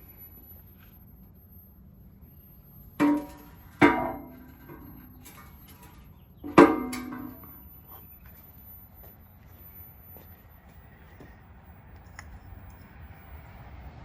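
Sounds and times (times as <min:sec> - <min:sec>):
metal clanks: 0:02.9 - 0:08.0.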